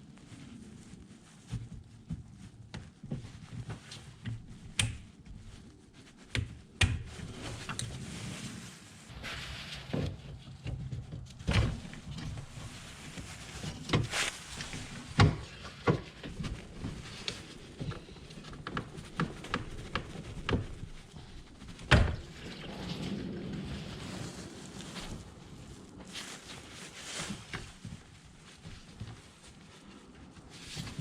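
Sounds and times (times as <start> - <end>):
hands clicking on plastic parts: 4.7 - 5.1.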